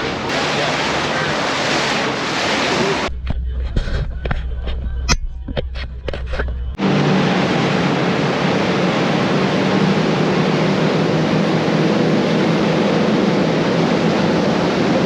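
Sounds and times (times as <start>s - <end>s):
rushing water: 0.0s - 3.1s, 6.8s - 15.0s
wind: 0.0s - 3.1s, 6.8s - 15.0s
powerboat engine roar: 0.0s - 15.0s.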